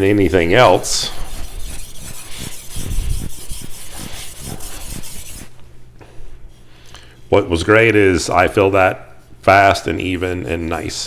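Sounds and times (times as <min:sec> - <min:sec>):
knife rasping on whetstone: 0:00.0 - 0:05.6.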